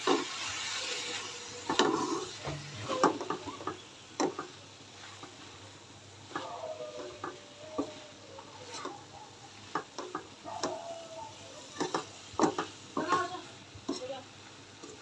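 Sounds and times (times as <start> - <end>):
metal spatula scraping a pan: 0.0 - 5.5, 6.2 - 9.8.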